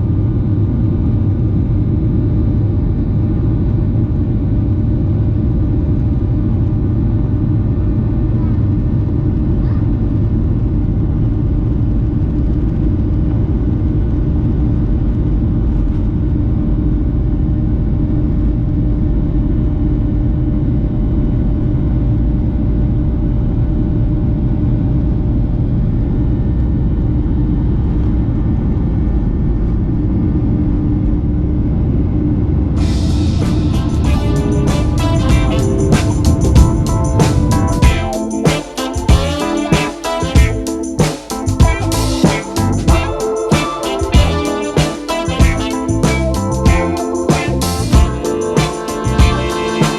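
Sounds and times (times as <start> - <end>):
airliner cabin engine rumble: 25.3 - 38.4.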